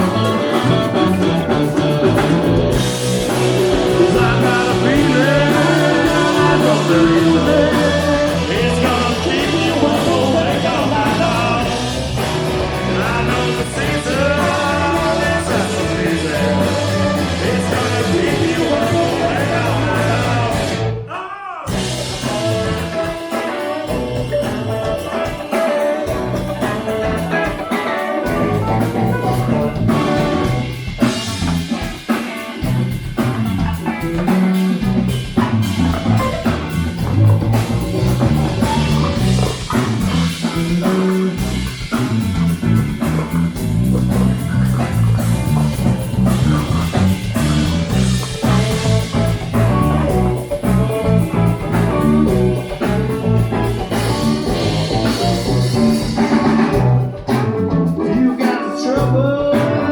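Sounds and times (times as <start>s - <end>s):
live rock band playing: 0.0s - 21.1s, 21.7s - 59.9s
person singing: 3.3s - 30.6s, 58.0s - 59.9s.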